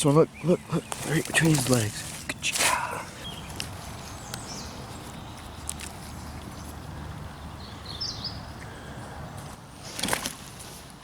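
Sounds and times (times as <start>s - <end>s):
bird chirp: 0.0s - 9.2s
footsteps on leaf litter: 0.8s - 4.3s
crunching scuffle: 0.8s - 4.4s.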